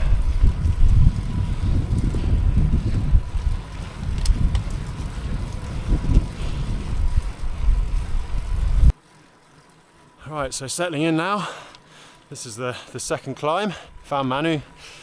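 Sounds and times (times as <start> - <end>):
wind buffeting microphone: 0.0 - 8.9
faint clicks: 11.7 - 12.3.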